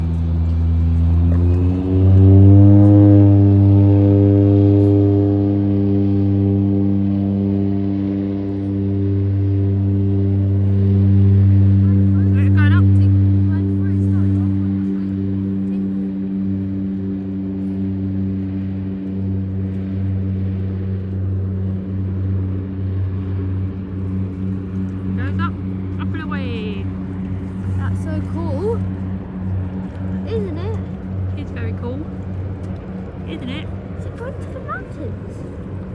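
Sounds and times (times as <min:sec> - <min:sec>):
seaplane propeller engine: 0:00.0 - 0:35.9.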